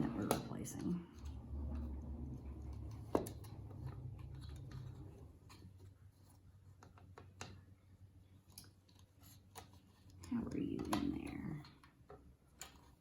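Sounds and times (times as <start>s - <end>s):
low hum: 0.0s - 5.6s.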